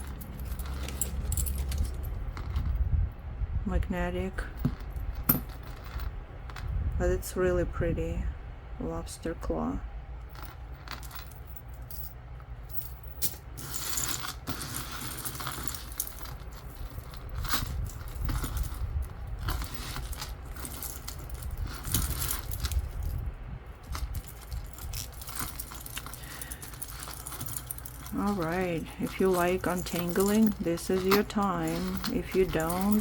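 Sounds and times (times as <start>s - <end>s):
metal chains clinking: 0.0s - 2.8s, 4.4s - 6.7s, 10.2s - 33.0s.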